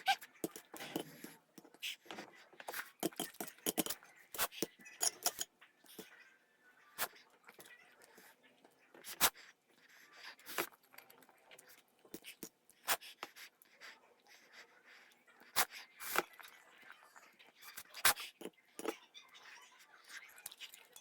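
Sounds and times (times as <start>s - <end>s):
chewing: 6.9s - 21.0s.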